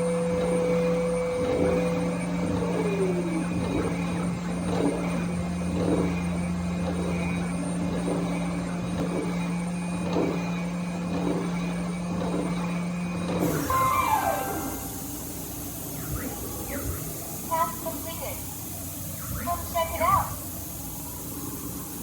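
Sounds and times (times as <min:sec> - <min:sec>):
milling machine cutting metal: 0:00.0 - 0:21.9
hiss with falling whistle: 0:13.4 - 0:22.0.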